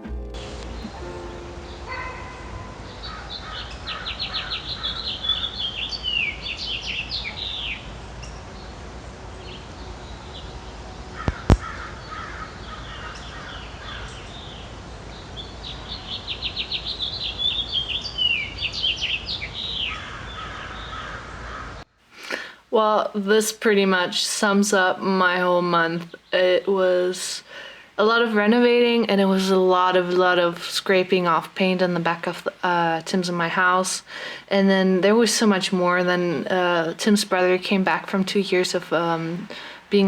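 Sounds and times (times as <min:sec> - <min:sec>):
bird singing high trills: 0:00.4 - 0:08.8, 0:09.4 - 0:21.0.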